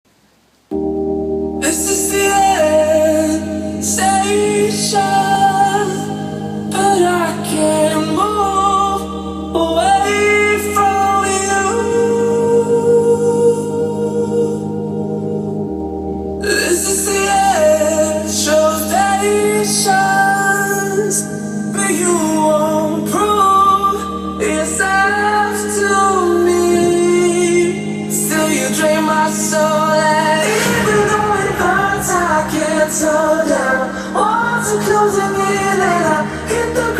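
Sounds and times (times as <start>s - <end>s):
sustained chords: 0.7s - 36.9s
person singing: 1.6s - 36.9s
low band accompaniment: 30.2s - 34.2s.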